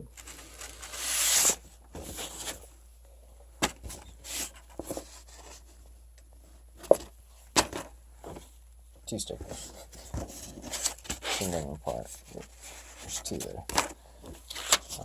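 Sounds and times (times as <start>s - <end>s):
paper or plastic swishing: 0.2s - 2.6s.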